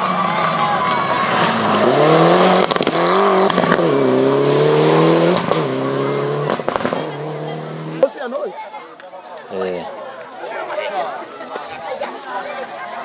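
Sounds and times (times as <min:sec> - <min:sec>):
exhaust crackles: 0:00.0 - 0:08.0
rally car engine accelerating: 0:00.0 - 0:08.0.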